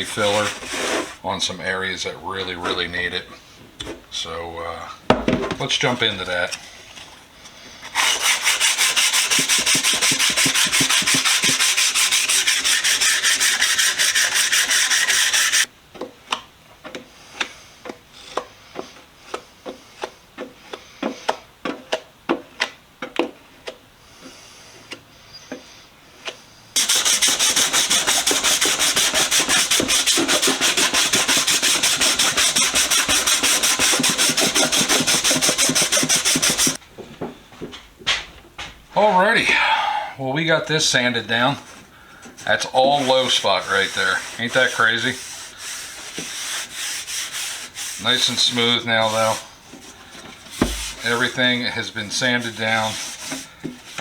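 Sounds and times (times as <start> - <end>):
sandpaper sanding metal: 0.0 - 1.2, 7.9 - 15.7, 26.8 - 36.8, 42.4 - 49.5, 50.5 - 54.0.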